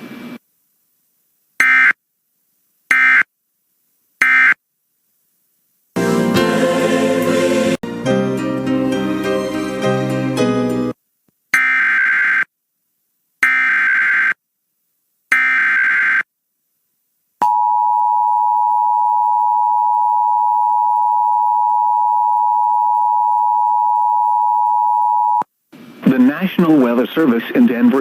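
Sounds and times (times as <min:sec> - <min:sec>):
two-tone attention signal: 0:02.9 - 0:03.2.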